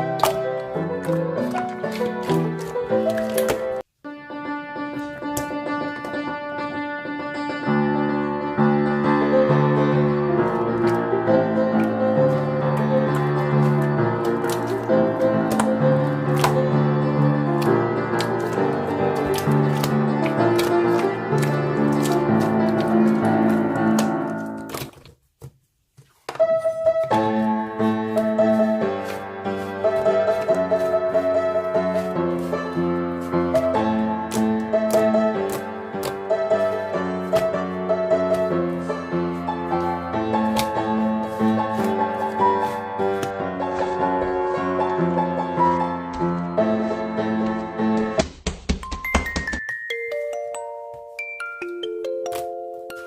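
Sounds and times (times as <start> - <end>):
piano playing: 0.0 - 24.9, 26.4 - 48.2, 48.8 - 53.0.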